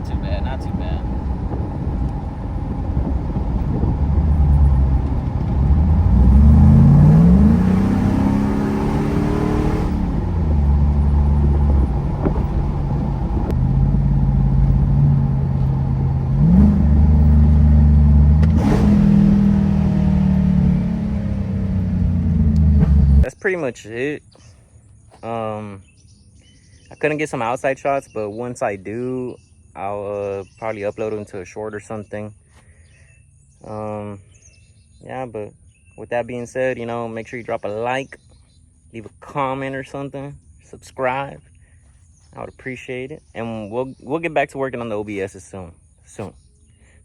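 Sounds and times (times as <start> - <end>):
truck engine accelerating: 0.0 - 23.3
wind noise: 0.0 - 23.3
road noise: 0.0 - 23.4.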